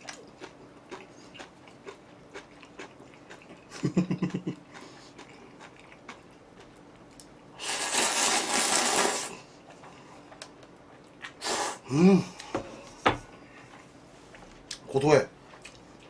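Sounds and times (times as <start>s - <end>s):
noodles slurped: 7.6s - 9.4s, 11.4s - 11.9s.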